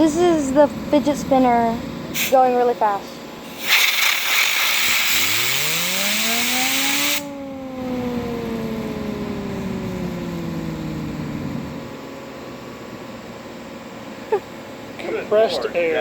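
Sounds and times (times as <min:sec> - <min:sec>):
fidget spinner whining: 0:00.0 - 0:13.2
compressed air hissing: 0:02.1 - 0:02.4, 0:03.4 - 0:07.2.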